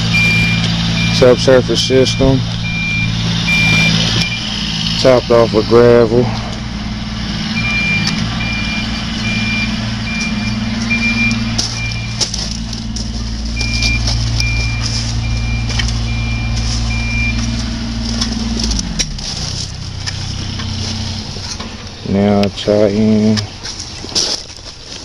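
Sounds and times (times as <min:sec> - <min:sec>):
backup alarm beeping: 0:00.0 - 0:04.8, 0:06.7 - 0:19.0
construction machine engine: 0:00.0 - 0:25.0
metal clanks: 0:10.0 - 0:22.5.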